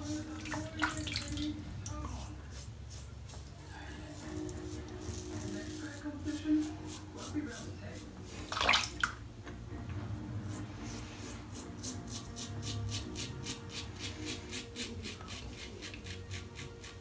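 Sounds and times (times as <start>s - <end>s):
razor scraping stubble: 1.9s - 8.5s, 10.4s - 17.0s.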